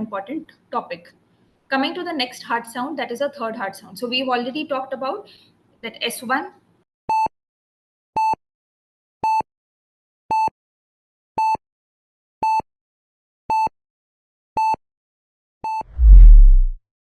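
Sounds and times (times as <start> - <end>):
loud deep boom: 16.0 - 16.8.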